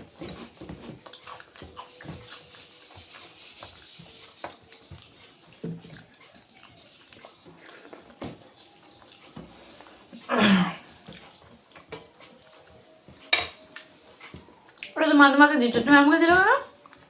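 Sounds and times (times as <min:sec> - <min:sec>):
eating clicks and smacks: 0:11.0 - 0:15.0.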